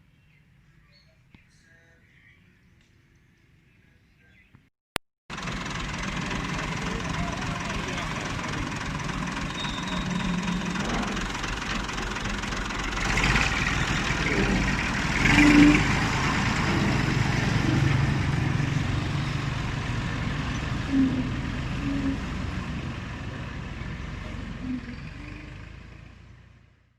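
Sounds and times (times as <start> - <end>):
tractor engine running: 5.3 - 26.8.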